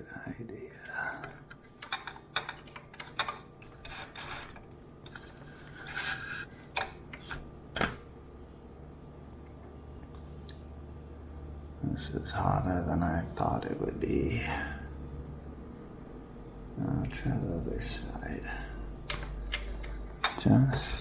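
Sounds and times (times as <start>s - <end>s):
objects handled at work table: 1.2s - 8.1s.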